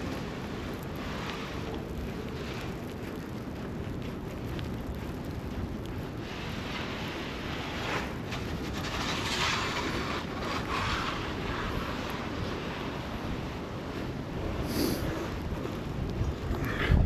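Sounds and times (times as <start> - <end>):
wind rumbling on microphone: 0.0 - 17.0
passing traffic hiss: 14.6 - 15.2.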